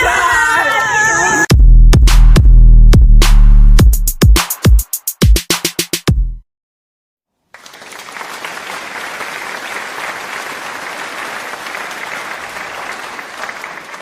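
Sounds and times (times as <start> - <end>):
crowd applauding: 7.5 - 14.0.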